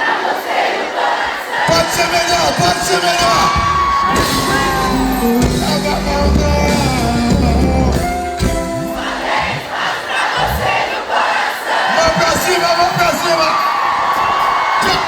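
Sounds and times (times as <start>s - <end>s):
crowd cheering and shouting: 0.0s - 15.0s
live band playing with singing: 2.6s - 10.9s.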